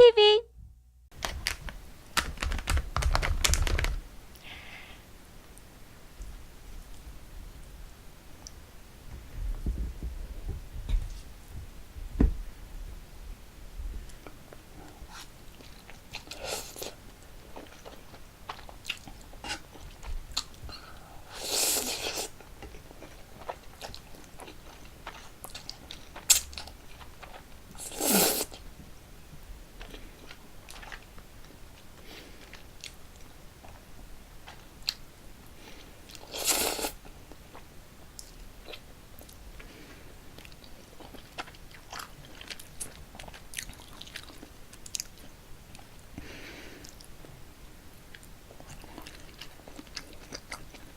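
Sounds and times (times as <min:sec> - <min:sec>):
slurping noodles: 0:21.3 - 0:22.3, 0:27.8 - 0:28.5
chewing with mouth clicks: 0:40.4 - 0:46.0, 0:48.1 - 0:50.9.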